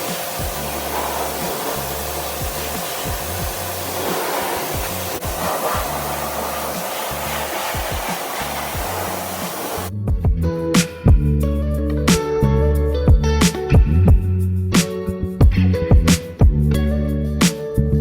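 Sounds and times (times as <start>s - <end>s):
pressure washer spraying: 0.0s - 9.9s
background music with bass: 0.0s - 18.0s.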